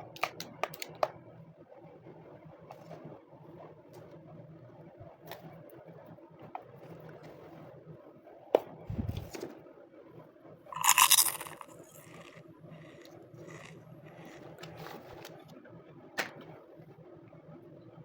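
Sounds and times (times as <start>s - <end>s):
plastic toy pieces clicking: 10.8s - 12.3s.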